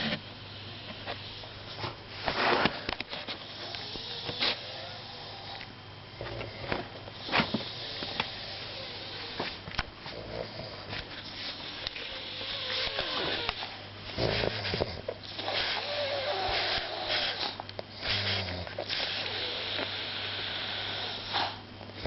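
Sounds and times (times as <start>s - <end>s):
person snoring: 12.3s - 13.6s, 14.2s - 21.4s.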